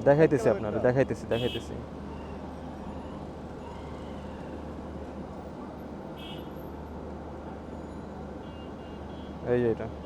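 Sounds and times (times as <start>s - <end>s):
street traffic noise: 0.0s - 10.0s.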